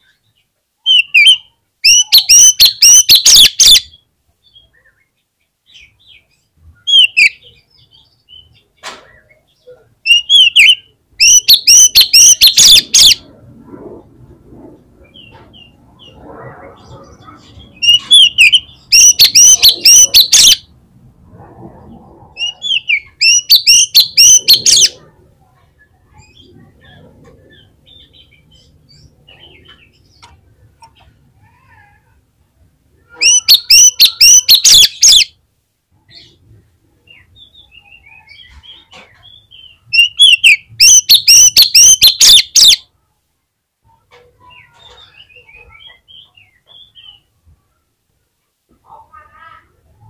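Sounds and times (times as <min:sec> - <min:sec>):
songbird whistling song: 0:00.0 - 0:13.3, 0:17.5 - 0:20.7, 0:22.4 - 0:25.0, 0:33.1 - 0:35.4, 0:37.1 - 0:42.9.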